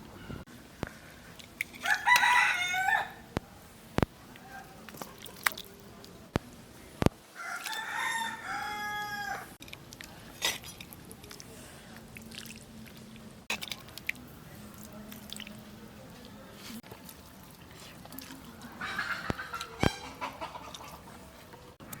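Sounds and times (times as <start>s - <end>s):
rooster crowing: 1.8s - 3.2s, 7.4s - 9.6s.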